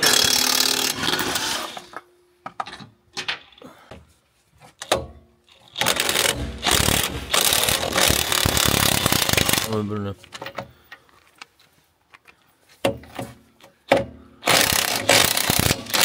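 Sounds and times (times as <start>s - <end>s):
impact wrench hammering: 5.8s - 9.8s.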